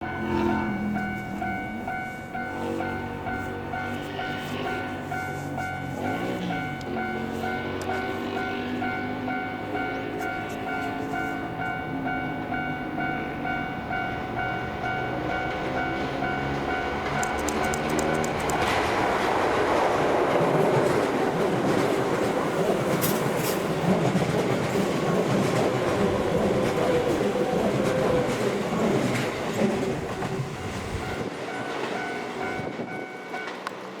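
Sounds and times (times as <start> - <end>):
level crossing warning bell: 0.0 - 34.0
train wheels clacking over rails: 13.4 - 34.0.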